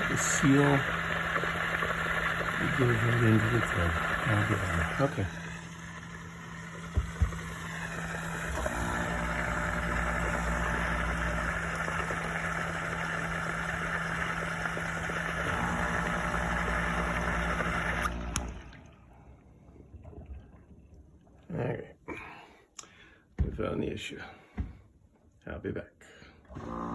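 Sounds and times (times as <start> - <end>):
water spraying: 0.0 - 18.7
dishwasher pump hum: 0.0 - 20.4, 21.5 - 25.2, 26.2 - 26.9.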